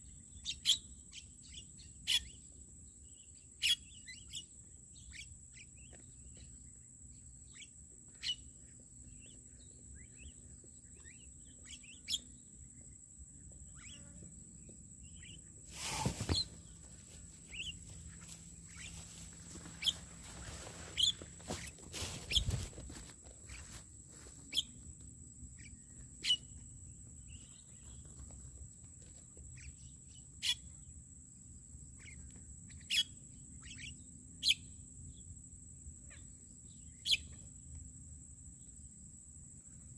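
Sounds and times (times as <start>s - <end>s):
birds chirping: 15.0s - 22.7s.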